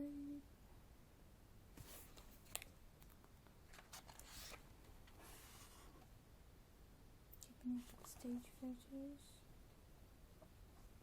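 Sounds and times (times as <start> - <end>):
pages rustling and turning: 1.8 - 6.0.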